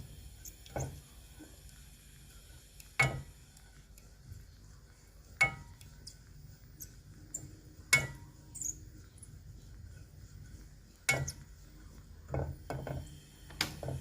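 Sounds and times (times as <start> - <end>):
utensil stirring paste in pot: 0.0 - 14.0
utensil knocking against pot: 11.1 - 11.4.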